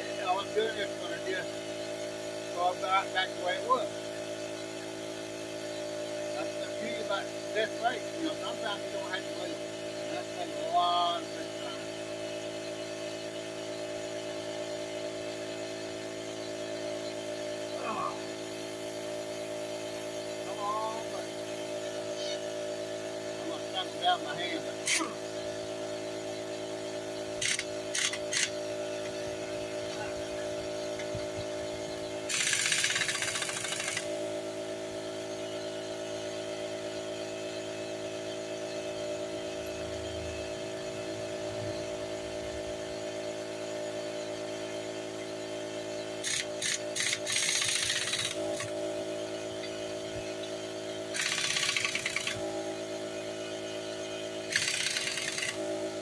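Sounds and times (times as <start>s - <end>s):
tool rasping bursts: 0.0s - 40.5s, 45.6s - 56.0s
steady hum: 0.0s - 56.0s
tool clicks: 27.4s - 28.6s, 32.3s - 34.1s, 51.2s - 52.4s, 54.5s - 55.6s.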